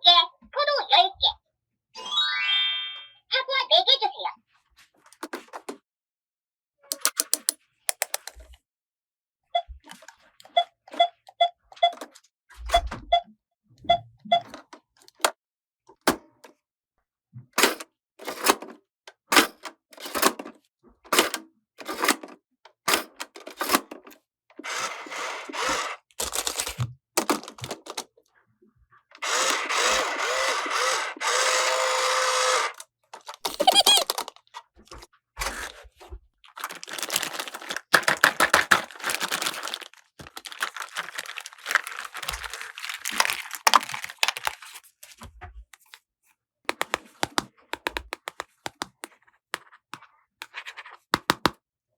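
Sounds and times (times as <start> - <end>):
plastic toy pieces clicking: 6.9 - 8.4, 29.3 - 34.4, 36.6 - 44.8, 46.7 - 49.1
rustling: 36.6 - 44.9.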